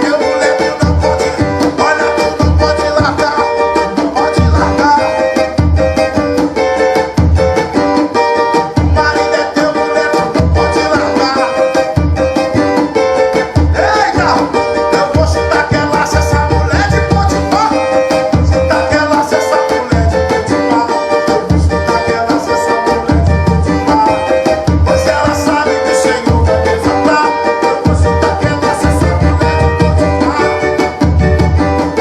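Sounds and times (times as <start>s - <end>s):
plucked string chords: 0.0s - 32.0s
low drum beats: 0.8s - 8.0s, 13.5s - 27.2s, 27.8s - 32.0s.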